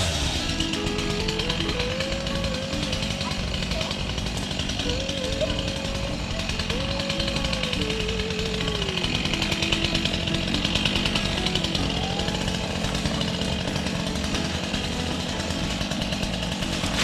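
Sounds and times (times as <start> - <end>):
small engine rattling: 0.0 - 17.0
thin wavering tone: 0.0 - 17.0.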